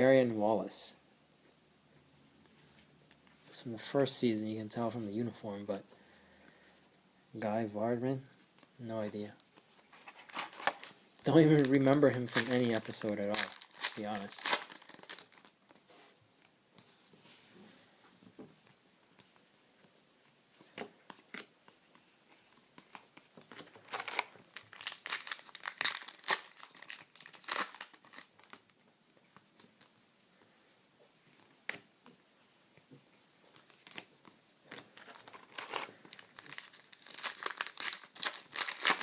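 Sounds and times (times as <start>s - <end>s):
wrappers being torn and crinkled: 10.2s - 15.5s, 23.8s - 28.7s, 35.0s - 39.0s.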